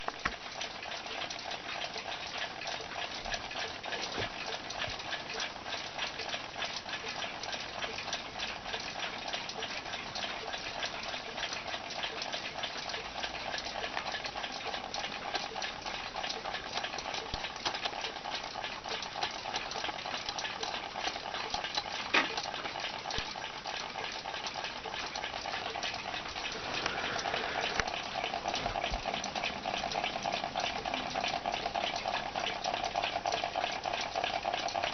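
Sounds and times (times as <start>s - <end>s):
clock mechanism crackle and whir: 0.0s - 34.9s.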